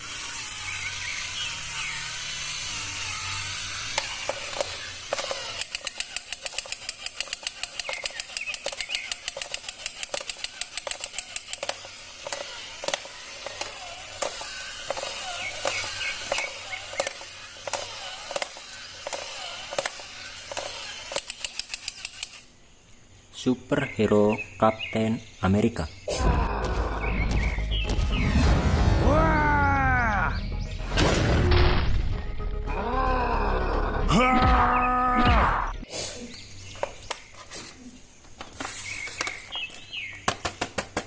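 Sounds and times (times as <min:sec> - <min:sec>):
birds chirping: 0:00.2 - 0:03.8, 0:05.9 - 0:31.0, 0:31.9 - 0:40.8
rapid sharp clicks: 0:04.0 - 0:22.5.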